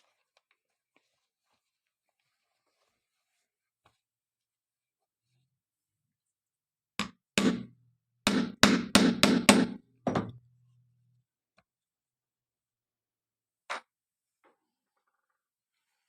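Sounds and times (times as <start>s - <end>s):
hammer striking metal rivet: 7.0s - 7.7s, 8.3s - 10.4s.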